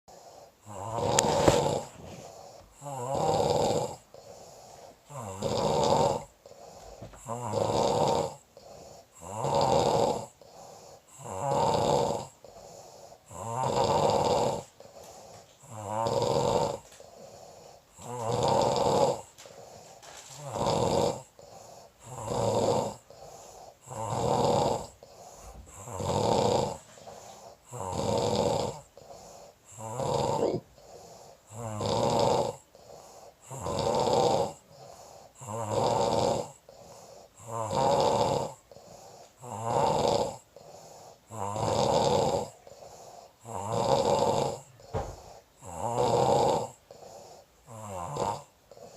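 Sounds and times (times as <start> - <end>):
soft breathing: 0.1 - 5.2, 6.2 - 7.4, 8.4 - 9.2, 10.3 - 11.2, 12.2 - 13.4, 14.6 - 15.7, 16.6 - 18.2, 19.1 - 20.6, 21.2 - 27.8, 28.8 - 29.8, 30.4 - 31.6, 32.6 - 33.5, 34.6 - 35.5, 36.6 - 37.5, 38.6 - 39.5, 40.4 - 41.3, 42.5 - 43.5, 44.6 - 45.6, 46.7 - 47.7, 48.4 - 48.9
man snoring: 0.1 - 48.9.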